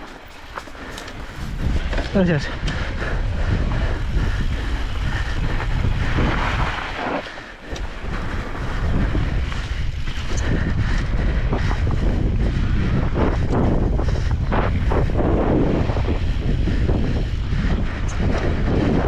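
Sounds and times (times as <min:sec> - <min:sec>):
wind buffeting microphone: 0:00.0 - 0:19.0.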